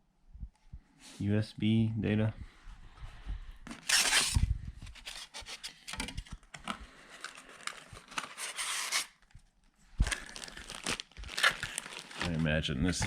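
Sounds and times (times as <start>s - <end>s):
packaging rustling and crinkling: 3.7s - 13.0s.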